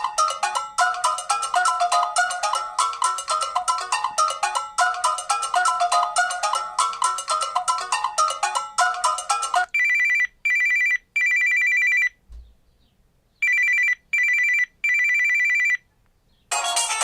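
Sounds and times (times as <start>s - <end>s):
melodic ringtone: 0.0s - 12.1s, 13.4s - 15.8s, 16.5s - 17.0s
two-tone pulsing ringtone: 0.0s - 12.1s, 13.4s - 15.8s.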